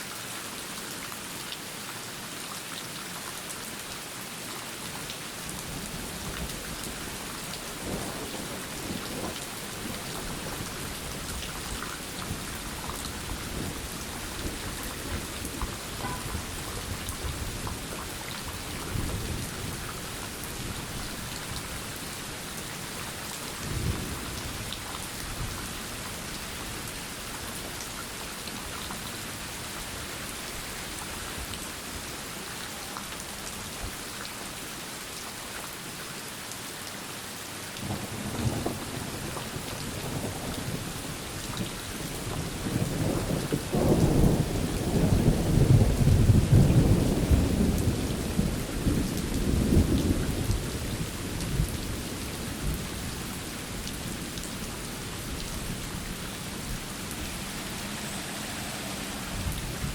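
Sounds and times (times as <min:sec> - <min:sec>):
steady rain falling: 0:00.0 - 0:59.9
rumble of thunder: 0:07.7 - 0:11.4, 0:37.8 - 0:41.0, 0:42.3 - 0:52.9.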